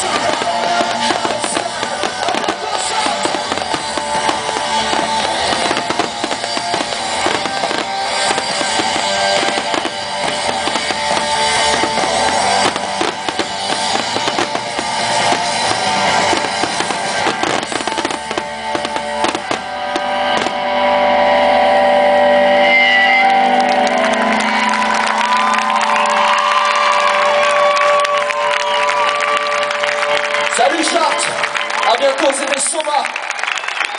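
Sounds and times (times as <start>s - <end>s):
fireworks banging: 0.0s - 21.6s
rock music over loudspeakers: 0.0s - 33.7s.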